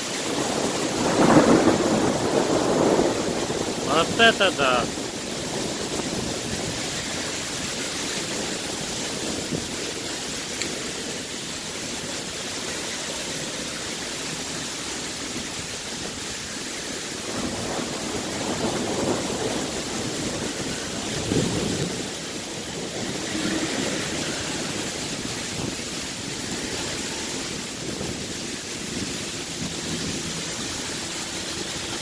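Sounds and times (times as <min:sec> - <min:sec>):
heavy hail striking surfaces: 0:00.2 - 0:11.3.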